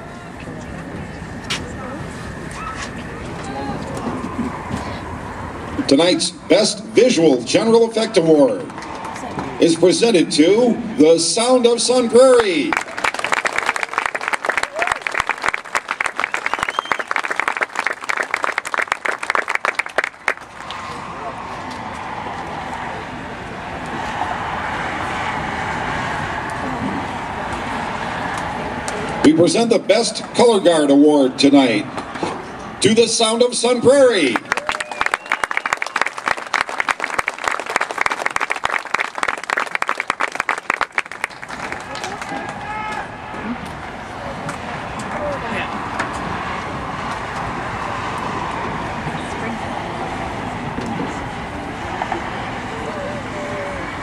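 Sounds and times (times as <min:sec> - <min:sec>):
crowd applauding: 0:12.1 - 0:21.2, 0:33.9 - 0:43.6.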